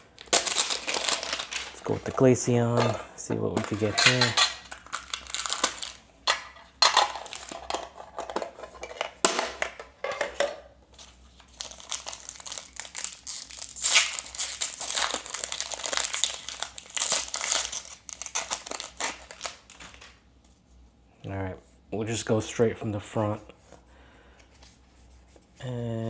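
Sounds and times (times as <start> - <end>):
plastic and foil packaging rustling: 0.0 - 9.8, 10.9 - 20.2.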